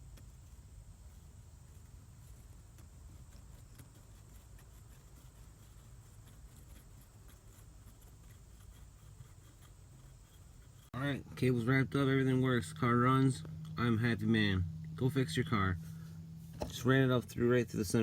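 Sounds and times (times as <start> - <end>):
faint low rumble: 0.0 - 18.0.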